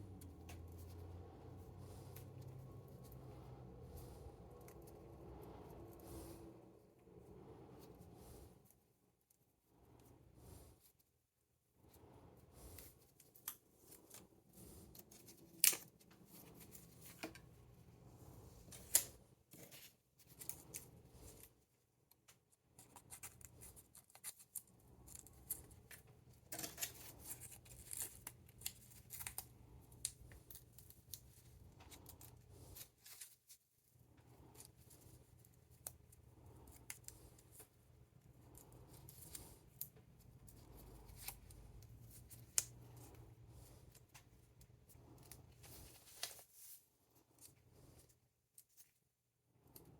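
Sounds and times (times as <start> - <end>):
faint low hum: 0.0 - 49.9
snips crinkles and rustles of paper: 12.7 - 17.6, 18.6 - 33.7, 34.4 - 37.8, 38.4 - 49.0.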